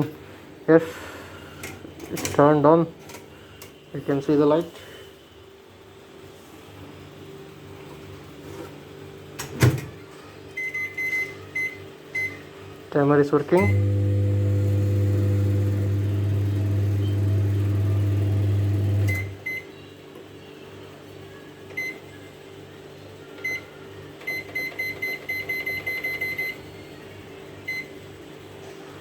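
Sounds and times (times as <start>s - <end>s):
microwave oven humming: 13.5s - 29.0s.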